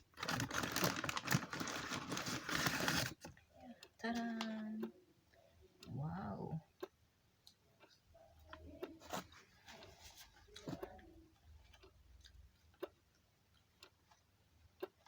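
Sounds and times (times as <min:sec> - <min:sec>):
snack packet rustling: 0:00.2 - 0:03.2.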